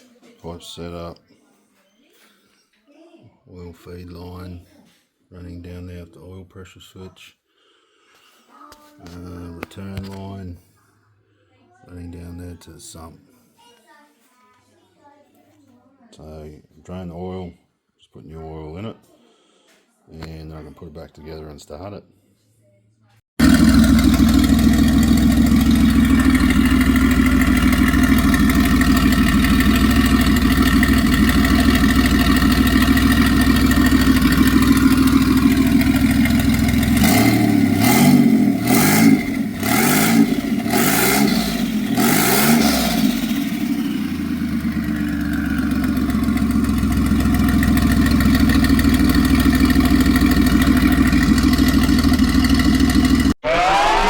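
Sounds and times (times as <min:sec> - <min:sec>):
car engine idling and revving: 0:23.4 - 0:53.9.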